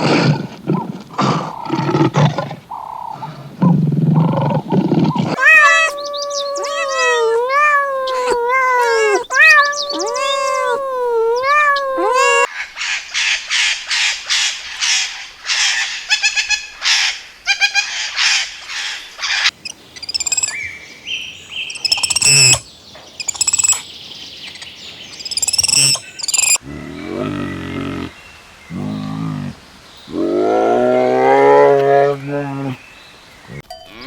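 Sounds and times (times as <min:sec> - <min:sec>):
cat meowing: 0:05.4 - 0:12.5, 0:20.2 - 0:20.5, 0:21.8 - 0:22.6, 0:23.2 - 0:23.8
faint high chirps: 0:05.4 - 0:12.5, 0:20.0 - 0:20.7, 0:21.6 - 0:22.6, 0:23.2 - 0:23.8, 0:24.5 - 0:26.6
harsh repeated bird calls: 0:05.4 - 0:12.5, 0:19.5 - 0:20.7, 0:21.5 - 0:23.8, 0:24.4 - 0:26.6.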